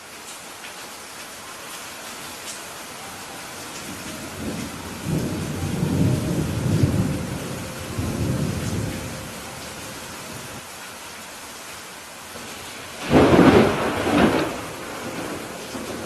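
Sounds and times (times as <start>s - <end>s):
steady rain: 0.0s - 16.0s
thunder rumble: 3.9s - 10.6s, 13.0s - 16.0s.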